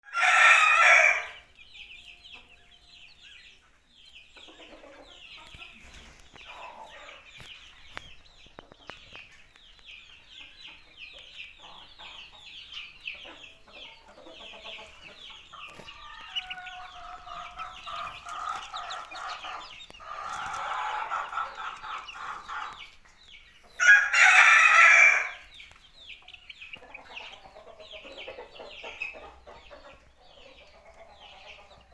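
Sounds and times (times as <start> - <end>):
rooster crowing: 0.0 - 1.4, 23.8 - 25.4
chickens clucking: 0.0 - 31.9.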